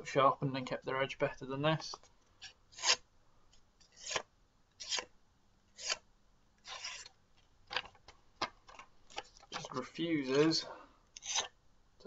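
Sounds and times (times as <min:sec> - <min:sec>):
knife tearing paper: 0:02.7 - 0:03.0, 0:03.9 - 0:05.1, 0:05.8 - 0:06.0, 0:06.6 - 0:07.1.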